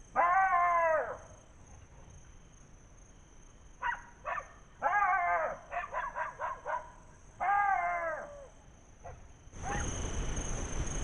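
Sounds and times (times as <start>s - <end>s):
jackals yipping and whining: 3.8s - 10.0s.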